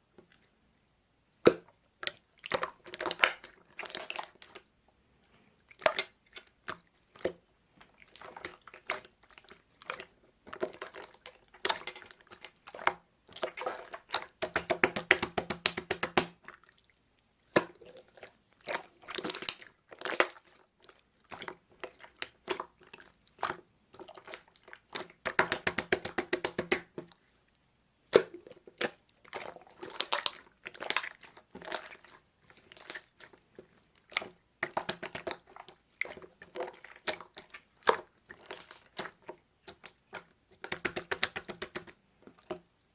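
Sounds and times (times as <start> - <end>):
slime squishing and popping: 13.4 - 16.4, 25.0 - 26.9.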